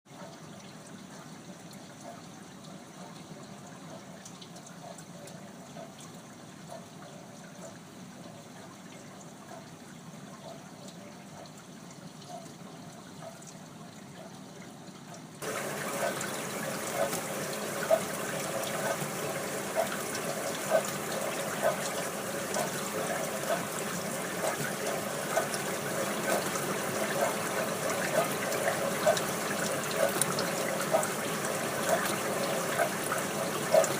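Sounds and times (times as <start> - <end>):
dishwasher water spraying: 15.4 - 33.9.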